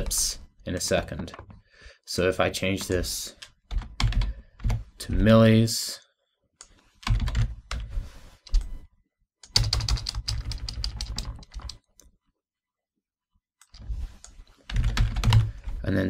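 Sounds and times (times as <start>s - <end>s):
computer keyboard typing: 2.8s - 4.9s, 7.0s - 7.9s, 9.4s - 11.9s, 13.6s - 15.6s.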